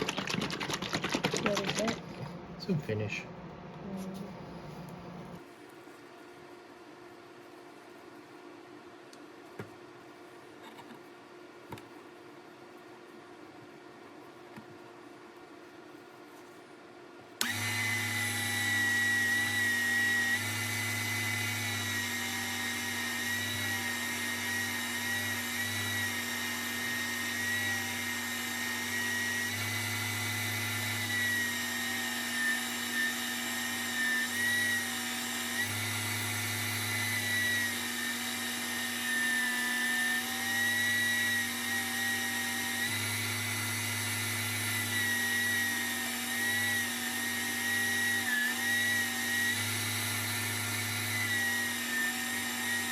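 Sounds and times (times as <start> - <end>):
wood lathe motor whining: 17.4 - 52.9.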